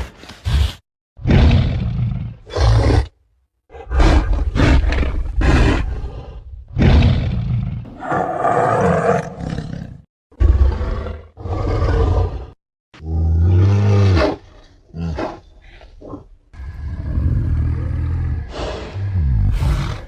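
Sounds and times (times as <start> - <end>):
deep ape roars and growls: 1.2 - 20.0.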